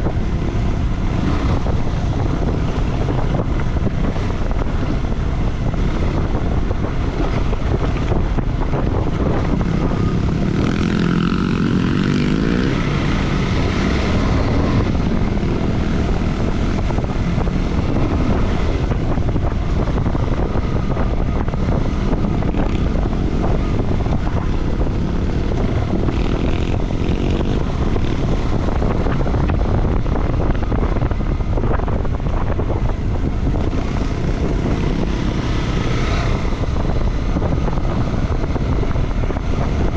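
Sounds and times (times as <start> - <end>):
motorcycle engine running: 0.0 - 39.9
wind buffeting microphone: 0.0 - 39.9.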